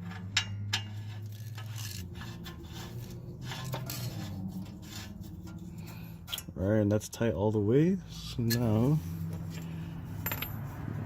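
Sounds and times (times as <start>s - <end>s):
metallic scraping of threads: 0.0s - 6.6s
low steady hum: 0.0s - 11.0s.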